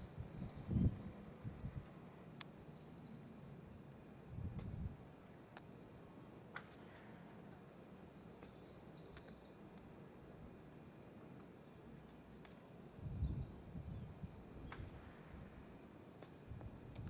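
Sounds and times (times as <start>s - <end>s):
insect chirping: 0.0s - 6.5s, 7.1s - 17.0s
faint sharp clicks: 8.4s - 9.9s, 12.4s - 12.6s.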